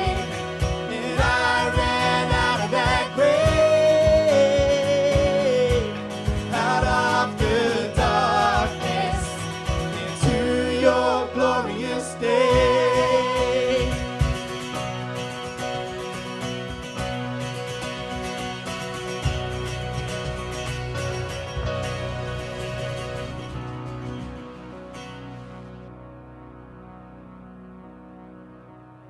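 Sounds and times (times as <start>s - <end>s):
steady drum beat: 0.0s - 10.9s, 12.5s - 24.4s
person singing: 0.0s - 14.7s
band playing: 0.0s - 26.0s.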